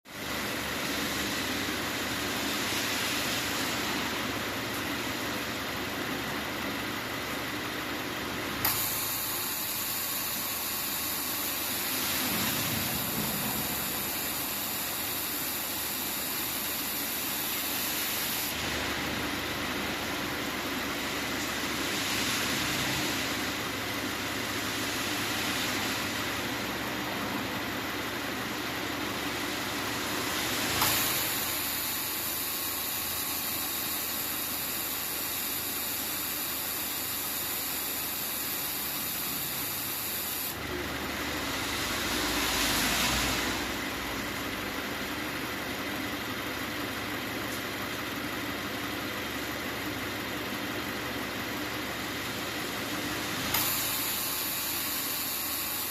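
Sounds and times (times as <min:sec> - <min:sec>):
car engine idling: 0:00.1 - 0:21.9, 0:43.6 - 0:55.9
high hissing whine: 0:00.2 - 0:06.2, 0:08.6 - 0:19.0, 0:28.7 - 0:40.6, 0:52.5 - 0:55.9.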